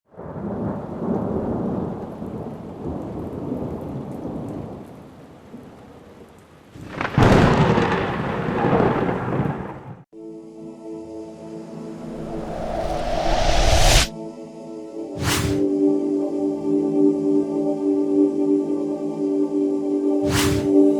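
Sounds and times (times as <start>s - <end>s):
thunder rumbling: 6.8s - 9.6s.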